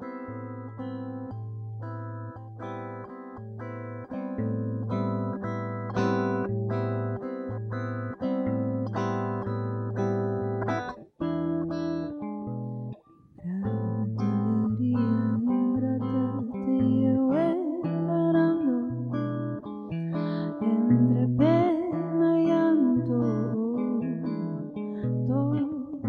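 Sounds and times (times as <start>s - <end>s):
person singing: 13.4s - 26.0s.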